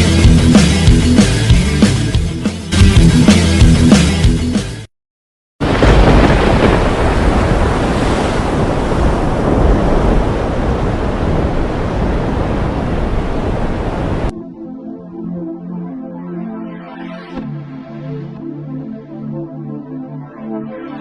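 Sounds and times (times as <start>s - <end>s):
rushing noise with low rumble: 5.6s - 14.4s
soft sustained music: 14.3s - 21.0s.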